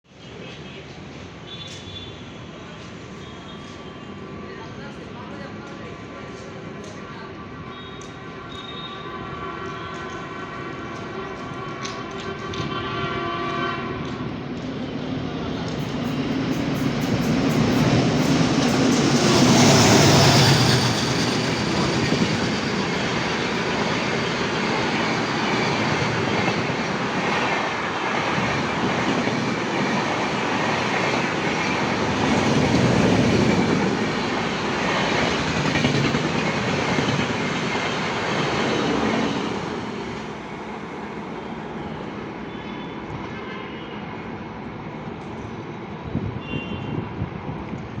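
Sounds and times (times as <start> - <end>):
train wheels rumbling on rails: 7.8 - 43.4.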